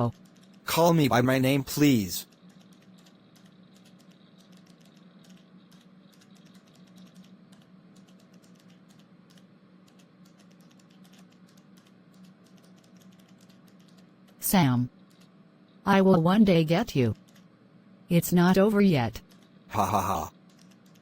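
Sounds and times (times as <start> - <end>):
low steady hum: 0.0 - 21.0
typing on computer keyboard: 0.1 - 0.6, 2.2 - 14.4, 17.2 - 17.5, 20.3 - 21.0.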